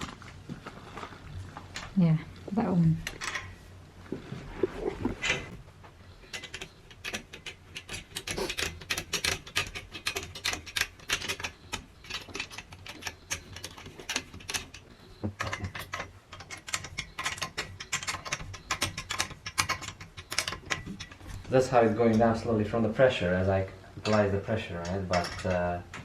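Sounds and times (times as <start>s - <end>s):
stair gate ratcheting clicks: 6.2s - 14.8s, 15.4s - 21.2s.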